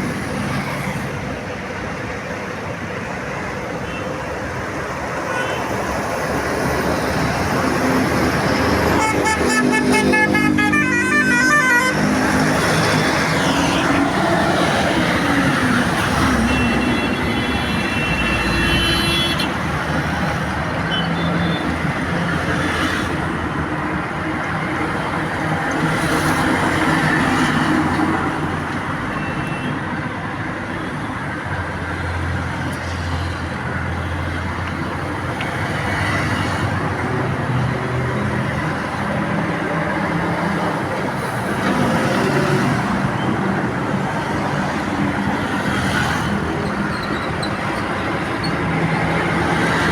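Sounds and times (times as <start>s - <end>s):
traffic passing: 0.0s - 49.9s
vehicle horns: 8.9s - 14.1s, 16.4s - 19.6s.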